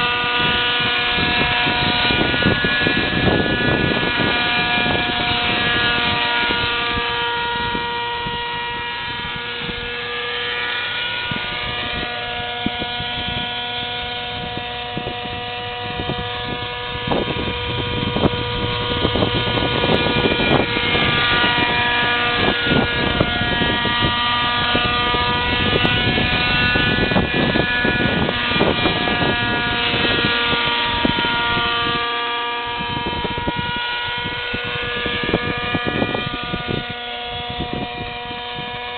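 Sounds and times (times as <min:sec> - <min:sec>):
rc helicopter engine and rotor: 0:11.3 - 0:31.0.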